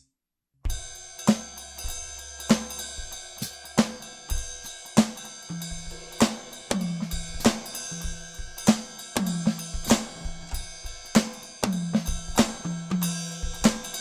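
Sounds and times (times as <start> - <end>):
bass drum: 0.7 - 14.0
electronic drum kit beat: 0.7 - 14.0
ticking hi-hat and cymbal: 0.7 - 14.0.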